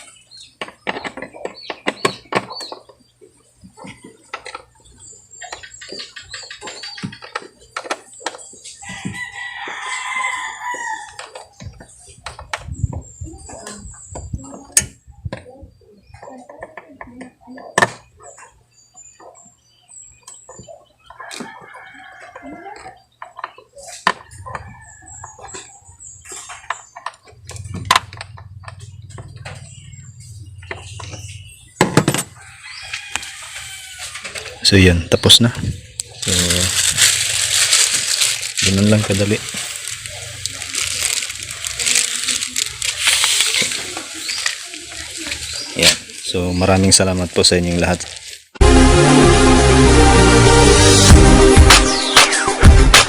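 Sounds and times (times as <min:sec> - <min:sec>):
rooster crowing: 0:08.8 - 0:11.3, 0:21.2 - 0:23.0, 0:32.3 - 0:34.6.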